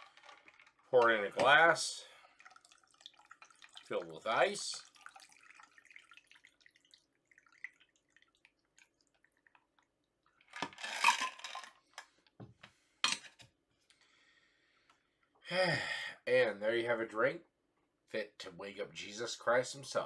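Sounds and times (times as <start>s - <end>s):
faint drips and ticks: 0.0s - 10.5s.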